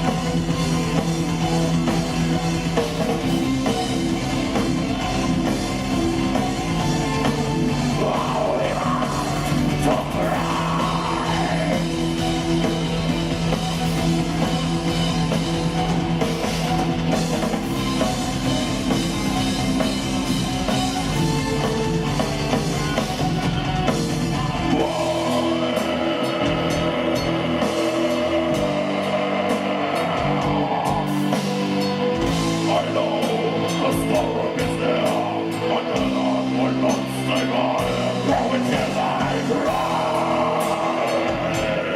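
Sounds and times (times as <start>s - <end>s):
bass guitar: 0.0s - 41.9s
distorted guitars: 0.0s - 41.9s
drum kit: 0.0s - 41.9s
keyboards: 0.0s - 41.9s.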